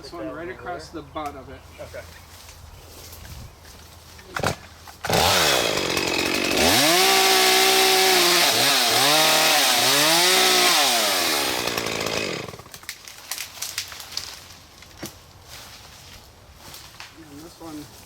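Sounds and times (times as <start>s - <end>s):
chainsaw cutting tree trunk: 4.4s - 13.1s.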